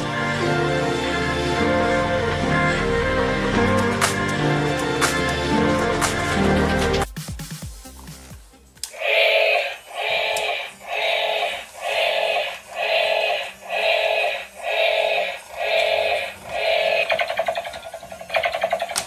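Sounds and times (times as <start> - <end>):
pulsing synthetic toy tone: 9.0 - 19.0.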